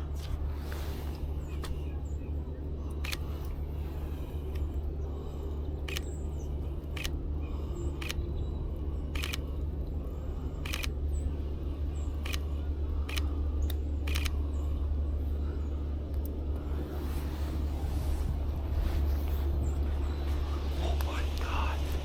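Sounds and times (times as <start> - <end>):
low rumble: 0.0 - 22.0
camera shutter clicks: 3.0 - 3.3, 8.0 - 8.2, 9.2 - 9.4, 10.6 - 10.9, 12.2 - 12.4, 13.1 - 13.3, 14.1 - 14.4.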